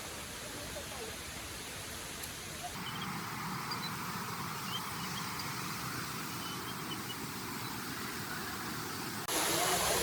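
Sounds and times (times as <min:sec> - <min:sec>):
water rushing: 0:00.0 - 0:10.0
faint high bird chirps: 0:02.6 - 0:09.1.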